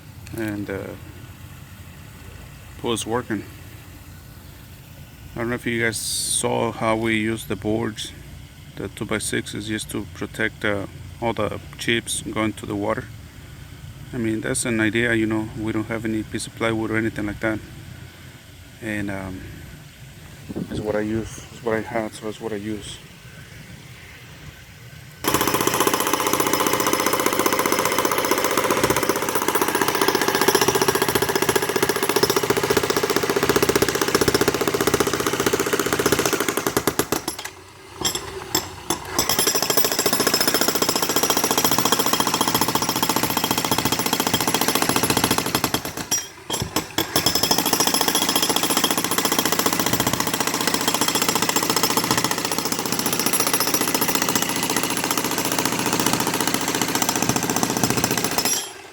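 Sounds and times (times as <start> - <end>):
jackhammer breaking concrete: 25.2 - 58.9.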